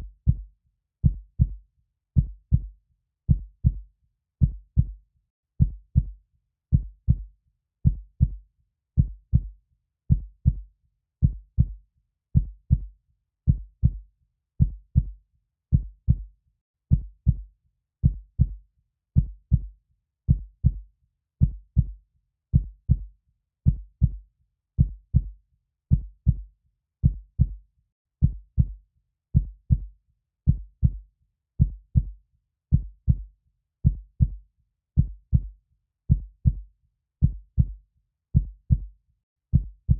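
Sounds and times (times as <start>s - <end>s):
heartbeat thuds: 1.0s - 1.6s, 2.2s - 2.7s, 4.4s - 5.0s, 5.6s - 6.1s, 7.9s - 8.4s, 9.0s - 9.5s, 10.1s - 10.6s, 11.2s - 11.8s, 12.4s - 12.9s, 13.5s - 14.0s, 14.6s - 15.1s, 15.7s - 16.3s, 16.9s - 17.4s, 18.0s - 18.6s, 19.2s - 19.7s, 20.3s - 20.8s, 22.6s - 23.1s, 23.7s - 24.2s, 24.8s - 25.3s, 25.9s - 26.4s, 27.0s - 27.6s, 28.2s - 28.8s, 29.4s - 29.9s, 30.5s - 31.0s, 31.6s - 34.4s, 35.0s - 35.5s, 36.1s - 36.6s, 37.2s - 37.8s, 38.4s - 38.9s, 39.5s - 39.9s.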